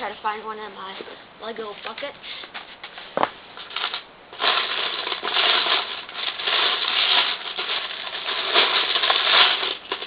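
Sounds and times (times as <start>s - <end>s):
plastic bricks clattering: 3.6s - 10.0s.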